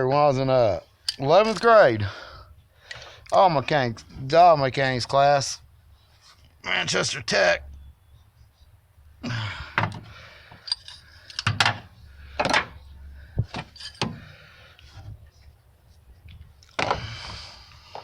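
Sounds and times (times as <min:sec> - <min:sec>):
hand tools clinking and knocking: 0:09.8 - 0:14.5.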